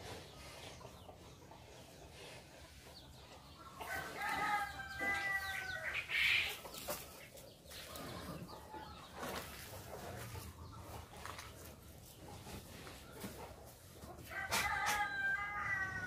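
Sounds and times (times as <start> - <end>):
rooster crowing: 3.9 - 5.8, 14.3 - 16.0.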